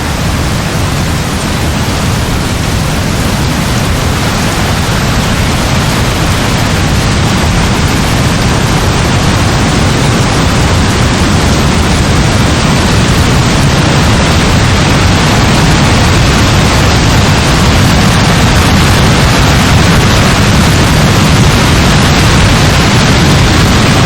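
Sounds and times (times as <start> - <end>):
deep rumble: 0.0 - 24.0
heavy rain: 0.0 - 24.0.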